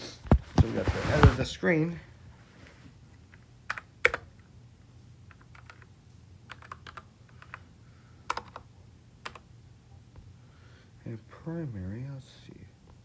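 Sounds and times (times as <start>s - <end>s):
faint low hum: 0.0s - 13.0s
computer keyboard typing: 3.7s - 4.4s, 5.3s - 5.9s, 6.5s - 7.6s, 8.3s - 9.4s.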